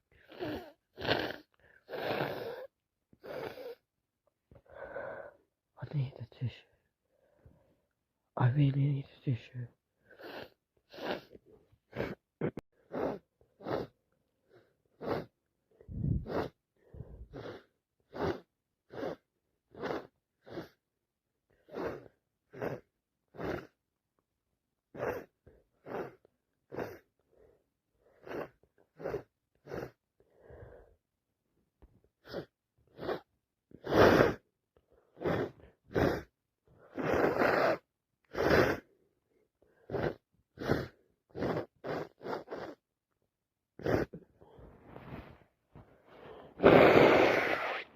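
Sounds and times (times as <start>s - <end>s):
person sniffing through blocked nose: 0.2s - 3.8s, 10.1s - 12.2s, 12.8s - 20.8s, 21.6s - 23.8s, 25.0s - 27.1s, 28.0s - 30.0s, 32.2s - 39.0s, 39.7s - 42.8s, 43.8s - 47.9s.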